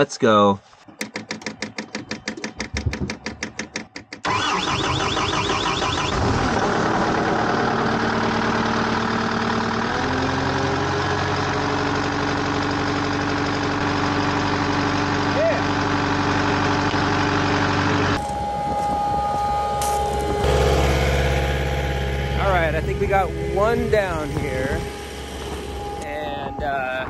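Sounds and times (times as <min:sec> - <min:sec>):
engine cranking on starter: 0:04.2 - 0:18.0
engine running: 0:04.3 - 0:27.0.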